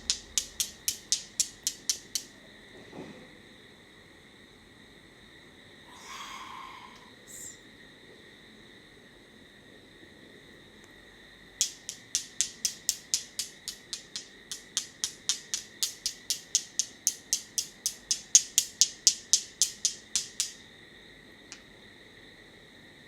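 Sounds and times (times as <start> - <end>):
rapid crisp clicks: 0.0 - 2.3, 11.6 - 20.6.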